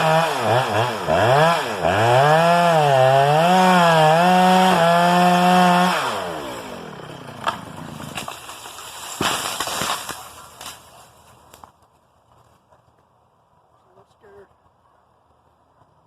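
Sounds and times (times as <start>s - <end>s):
chainsaw running at high revs: 0.0s - 8.2s
sharp cracks: 7.4s - 11.8s.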